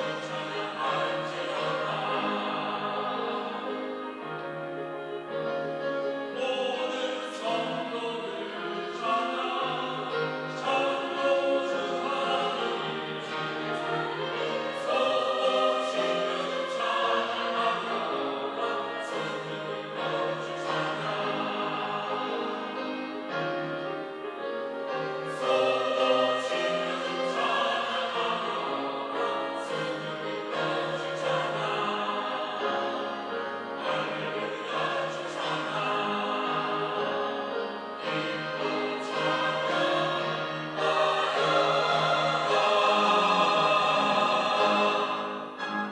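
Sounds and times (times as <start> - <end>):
church choir singing: 0.0 - 45.9.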